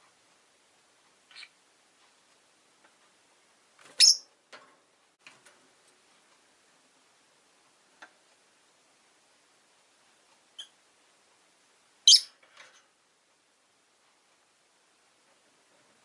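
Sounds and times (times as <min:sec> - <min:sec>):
lovebird chirping: 0:01.3 - 0:01.6, 0:04.0 - 0:04.3, 0:10.6 - 0:10.8, 0:12.0 - 0:12.4.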